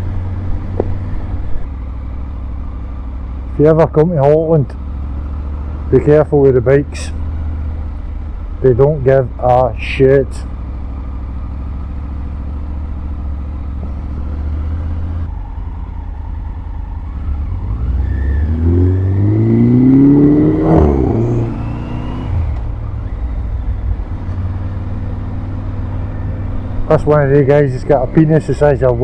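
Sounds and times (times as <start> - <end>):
traffic engines running: 0.0 - 29.0
engine revving: 17.1 - 29.0.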